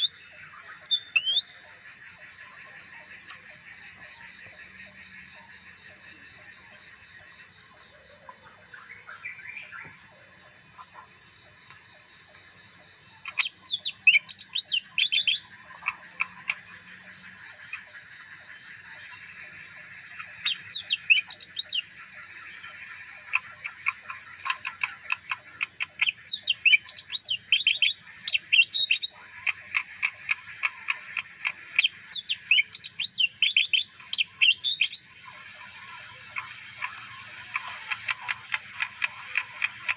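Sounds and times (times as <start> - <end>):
bird chirping and twittering: 0.0 - 1.8, 13.1 - 19.2, 20.0 - 39.9.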